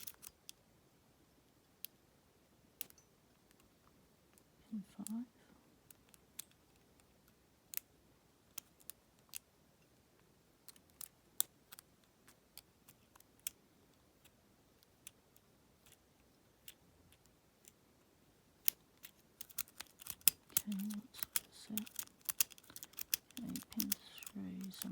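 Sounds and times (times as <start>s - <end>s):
lock pick clicking in padlock: 0.0s - 0.4s, 18.6s - 24.9s.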